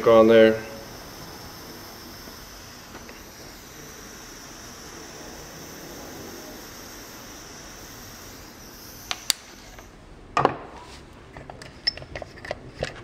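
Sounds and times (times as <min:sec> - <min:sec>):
hot-air torch hissing: 0:00.0 - 0:10.3.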